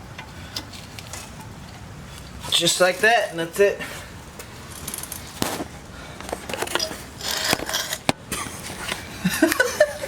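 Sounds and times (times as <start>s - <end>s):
metal parts and tools clicking: 4.7s - 5.4s, 6.5s - 8.2s.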